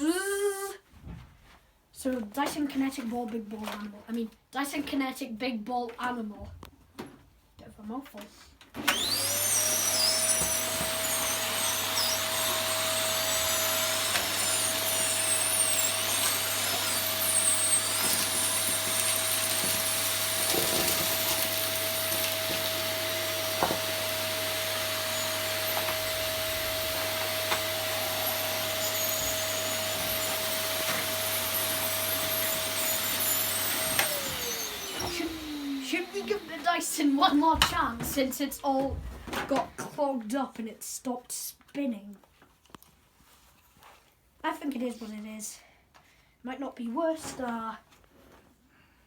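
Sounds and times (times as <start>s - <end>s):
vacuum cleaner running: 8.8s - 37.5s.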